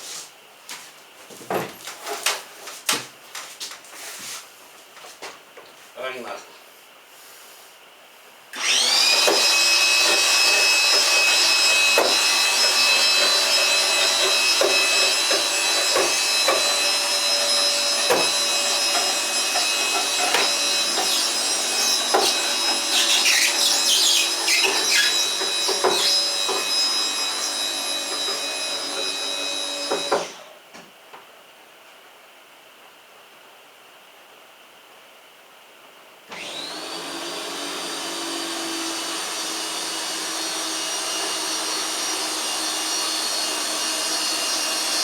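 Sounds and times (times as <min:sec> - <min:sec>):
electric winch motor whining: 0:08.6 - 0:30.5, 0:36.3 - 0:45.0.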